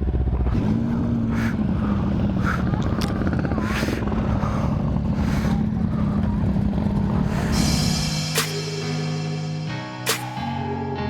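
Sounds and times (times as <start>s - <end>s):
motorcycle engine running: 0.0s - 8.7s
wind rushing over microphone: 0.5s - 7.9s.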